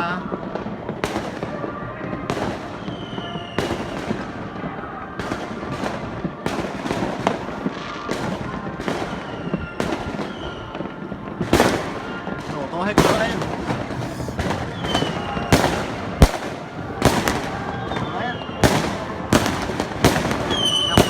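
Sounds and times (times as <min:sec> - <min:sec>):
fireworks bangs: 0:00.0 - 0:21.0
steady background noise: 0:10.7 - 0:21.0.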